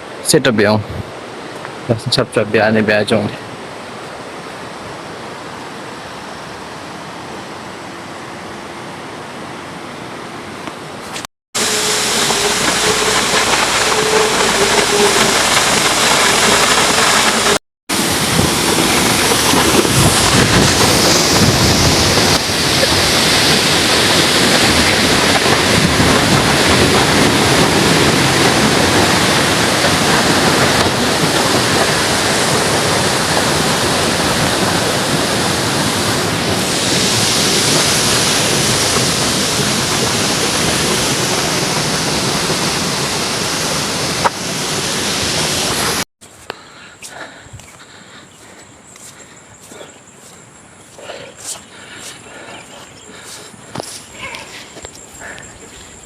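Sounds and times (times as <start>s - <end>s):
waterfall rushing water: 11.6s - 46.0s.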